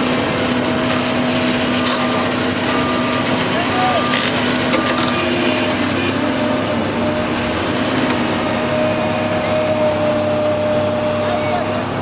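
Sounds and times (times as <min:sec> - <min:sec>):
heavy machinery engine running: 0:00.0 - 0:12.0.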